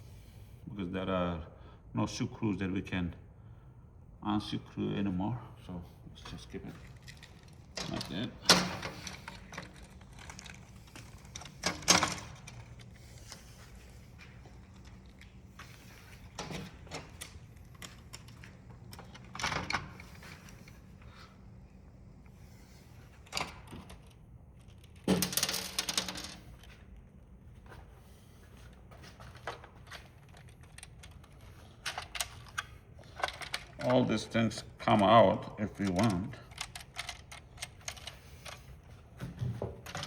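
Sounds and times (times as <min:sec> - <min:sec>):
plastic parts clicking and rattling: 0:06.6 - 0:20.9, 0:29.0 - 0:34.1, 0:35.7 - 0:40.0.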